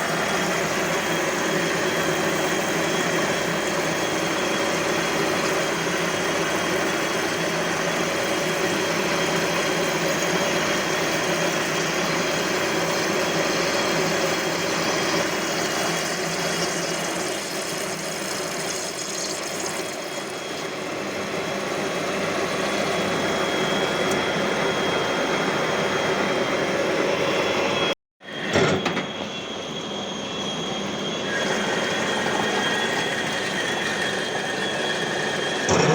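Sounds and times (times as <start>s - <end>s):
lathe machining steel: 0.0s - 18.3s, 28.4s - 35.9s.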